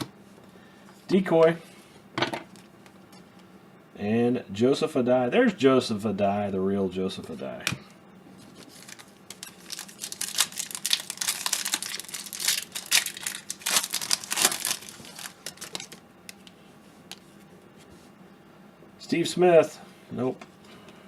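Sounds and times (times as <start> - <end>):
foil wrapper crinkling and tearing: 8.4 - 16.4.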